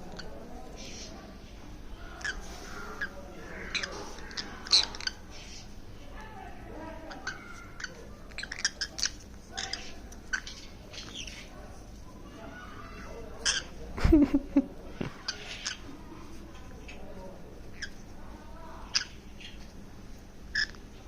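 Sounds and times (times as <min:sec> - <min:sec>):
parrot chirping and squawking: 0:02.0 - 0:05.8, 0:06.9 - 0:11.6, 0:12.4 - 0:13.8, 0:15.1 - 0:16.0, 0:17.7 - 0:18.0, 0:18.6 - 0:19.7, 0:20.5 - 0:20.8.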